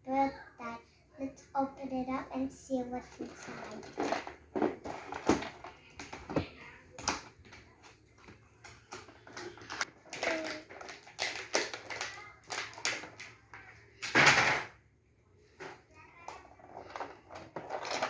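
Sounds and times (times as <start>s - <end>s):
cardboard and plastic packaging handled: 3.2s - 13.7s.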